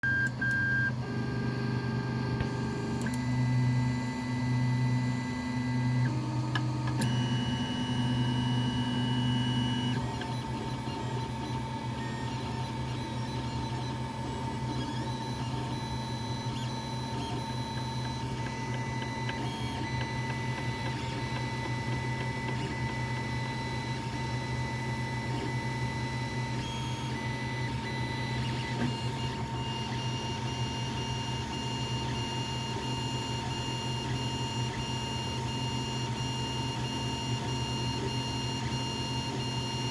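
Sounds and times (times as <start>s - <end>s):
stepper motors whining: 5.6s - 31.3s
printer knocking: 17.4s - 23.5s.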